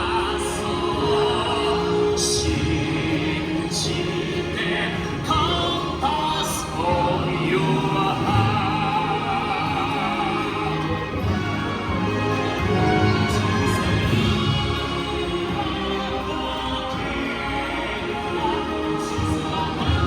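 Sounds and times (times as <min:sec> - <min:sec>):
orchestral music with singing: 0:00.0 - 0:20.0.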